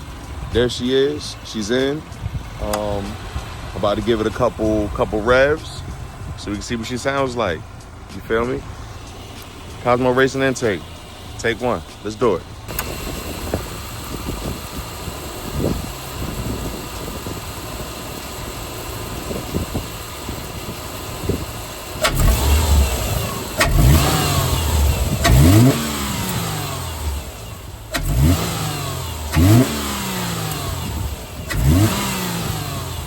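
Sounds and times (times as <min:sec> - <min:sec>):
car engine idling: 0:00.0 - 0:33.0
engine revving in quick blips: 0:22.0 - 0:33.0.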